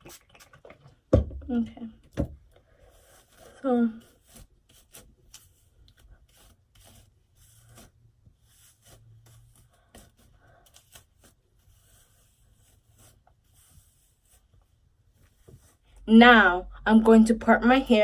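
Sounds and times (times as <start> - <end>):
comb rubbing through wet hair: 2.8 - 16.0.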